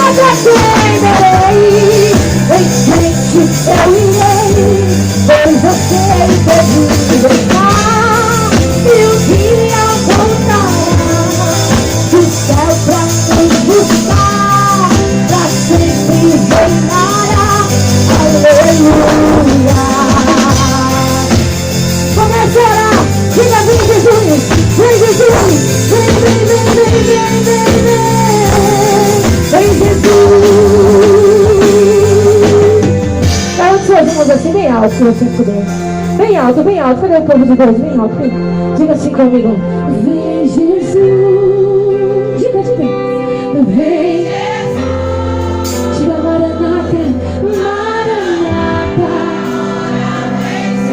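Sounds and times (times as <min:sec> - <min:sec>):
person singing: 0:00.0 - 0:33.0
amplified band with bass and drums: 0:00.0 - 0:50.9.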